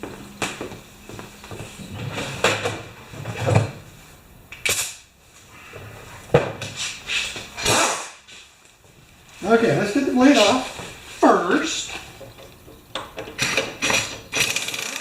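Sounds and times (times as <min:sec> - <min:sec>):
rustling and scraping: 0:00.0 - 0:04.2, 0:05.2 - 0:14.2
tools knocking and clicking on metal: 0:12.2 - 0:14.8.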